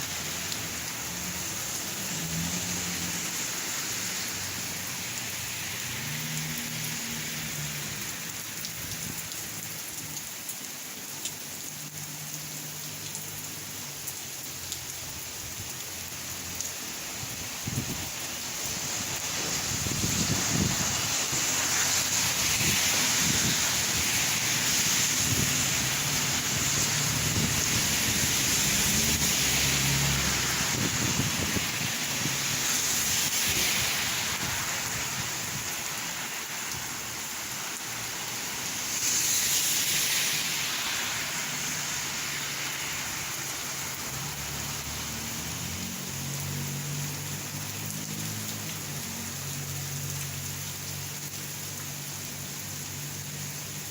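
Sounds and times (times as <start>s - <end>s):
rain falling and splashing: 0.0s - 53.9s.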